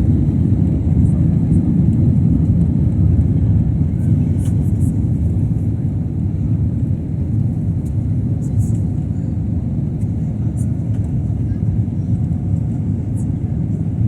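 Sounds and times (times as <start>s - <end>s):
jet engines rumbling in cabin: 0.0s - 14.0s.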